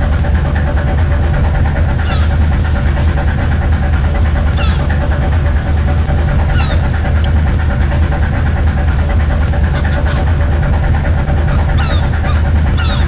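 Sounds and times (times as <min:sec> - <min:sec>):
boat engine humming: 0:00.0 - 0:13.0
falling high-pitched calls: 0:02.0 - 0:02.3, 0:06.5 - 0:06.9, 0:11.5 - 0:13.0.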